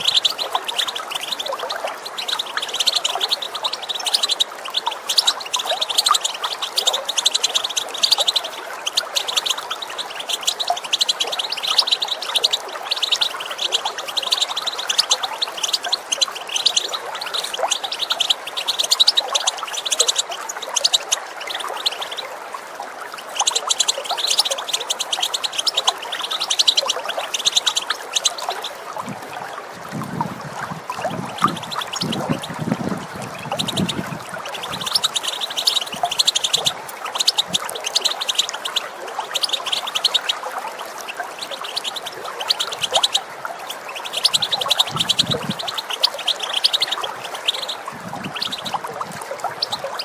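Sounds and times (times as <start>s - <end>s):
finches twittering: 0.0s - 22.3s, 23.1s - 28.8s, 30.8s - 50.0s
running water: 0.0s - 50.0s.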